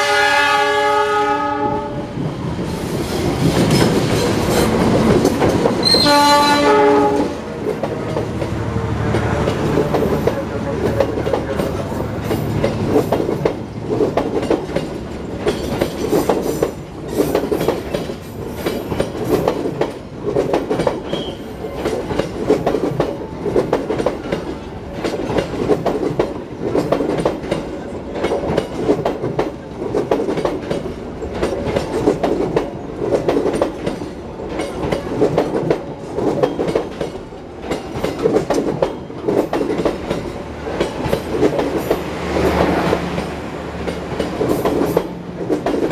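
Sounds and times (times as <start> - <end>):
train wheels clattering over rail joints: 2.2 - 45.9.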